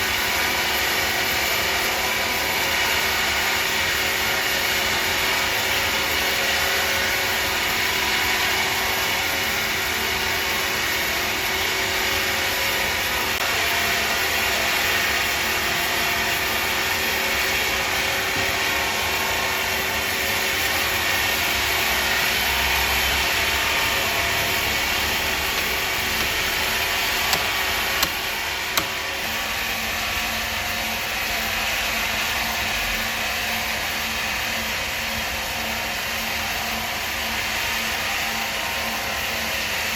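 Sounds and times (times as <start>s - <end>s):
log-sawing machine running: 0.1s - 31.0s
sharp knocks: 25.3s - 29.0s.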